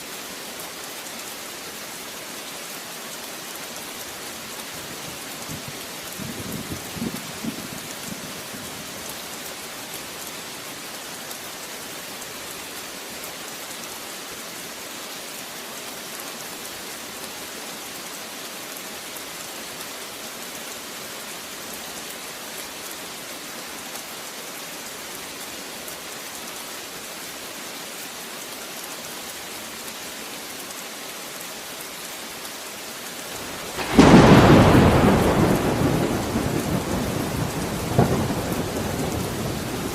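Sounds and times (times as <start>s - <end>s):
rain falling steadily: 0.0s - 39.9s
thunder rumble: 33.5s - 39.9s
loud thunderclap: 33.7s - 39.9s.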